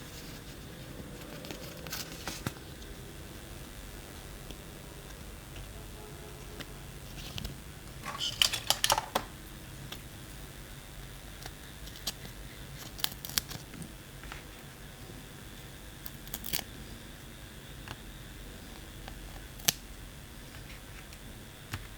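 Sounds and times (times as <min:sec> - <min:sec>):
packaging rustling: 0:07.1 - 0:09.4
plastic gadget clicking: 0:07.3 - 0:09.3.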